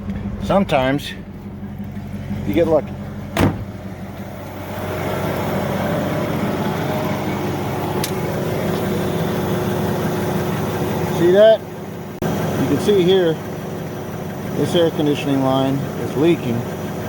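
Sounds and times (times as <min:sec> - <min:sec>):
car engine idling: 0:00.0 - 0:17.0
sharp knock: 0:03.4 - 0:03.7.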